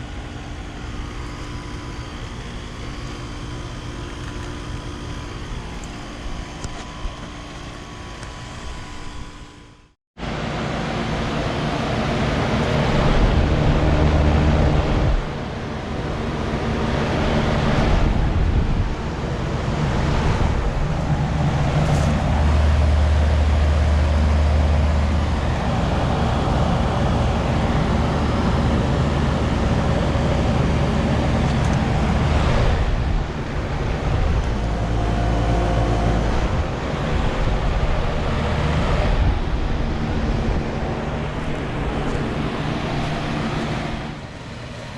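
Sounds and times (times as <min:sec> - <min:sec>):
condenser fan rushing: 0:00.0 - 0:44.9
low compressor hum: 0:00.0 - 0:44.9.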